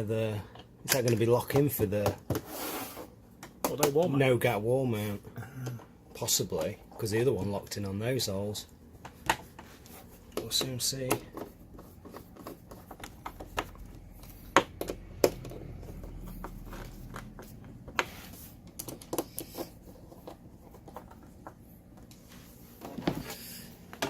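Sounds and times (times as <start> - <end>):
hard parts clicking and knocking: 10.3 - 22.1.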